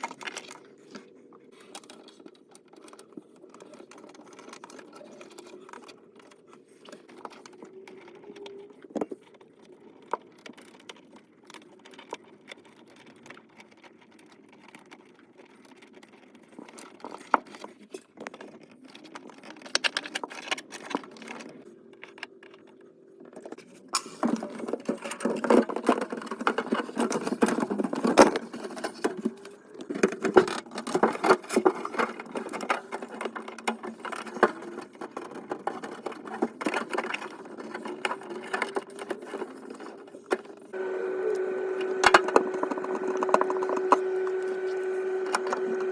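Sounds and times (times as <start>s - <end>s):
hands handling parts: 0.0s - 45.9s
steady low hum: 40.7s - 45.9s.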